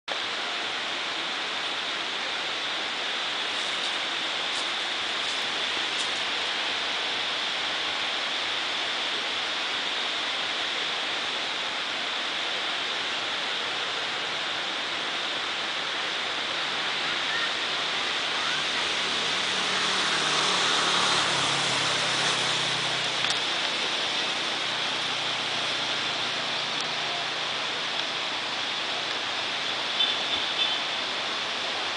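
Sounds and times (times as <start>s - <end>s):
steady rushing noise: 0.1s - 31.9s.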